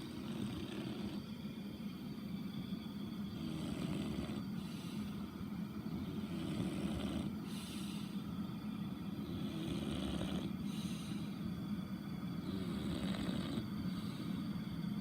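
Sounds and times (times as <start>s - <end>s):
dog snoring: 0.0s - 1.3s, 3.3s - 5.2s, 5.8s - 8.1s, 9.1s - 11.4s, 12.4s - 14.4s
steady low hum: 0.0s - 15.0s.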